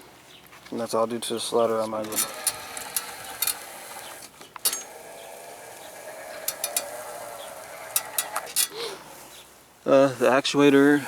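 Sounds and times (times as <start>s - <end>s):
electric motors whining: 2.0s - 8.8s
sharp mechanical clicks: 2.0s - 8.8s.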